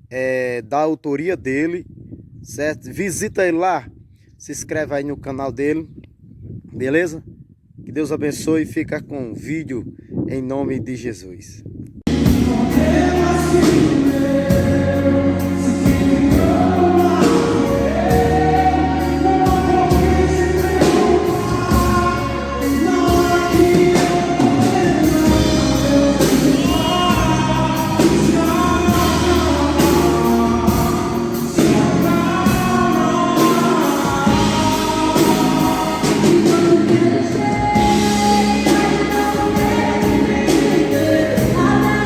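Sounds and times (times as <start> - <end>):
gospel hymn singing with instruments: 12.1 - 42.0.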